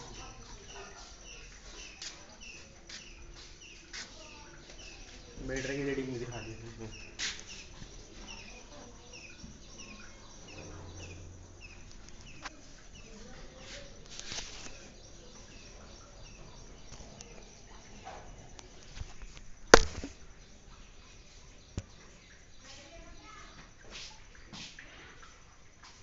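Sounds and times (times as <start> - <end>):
small birds chirping: 0.0 - 26.0
sharp loud knock: 19.8 - 20.1.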